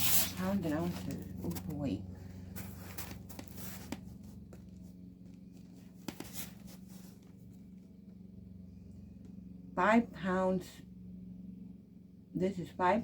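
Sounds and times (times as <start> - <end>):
steady low hum: 0.0 - 13.0
box rustling: 6.1 - 7.2.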